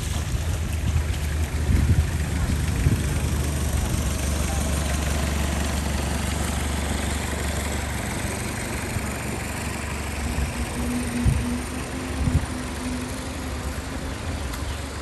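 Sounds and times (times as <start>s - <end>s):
boat engine humming: 0.0s - 15.0s.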